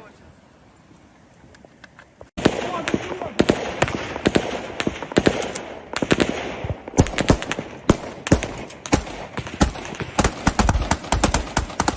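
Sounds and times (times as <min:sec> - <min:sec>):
small-arms gunshots: 0:02.4 - 0:11.9.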